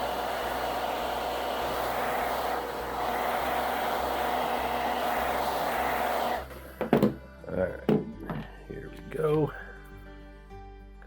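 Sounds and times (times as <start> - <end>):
hair dryer blowing: 0.0 - 6.6.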